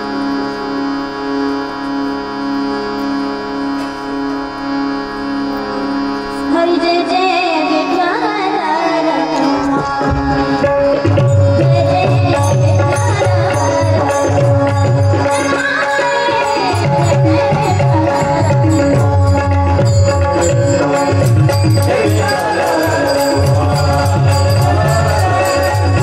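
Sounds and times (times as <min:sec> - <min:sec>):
harmonium drone: 0:00.0 - 0:26.0
high singing voice: 0:06.4 - 0:19.2
drumming with steady beat: 0:09.7 - 0:26.0.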